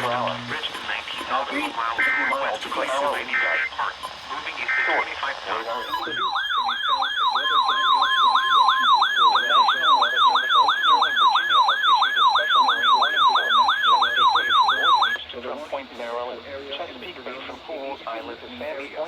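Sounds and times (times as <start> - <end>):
steady electronic beep: 2.0 - 2.4, 5.7 - 15.2
electronic siren alert tone: 5.7 - 15.2.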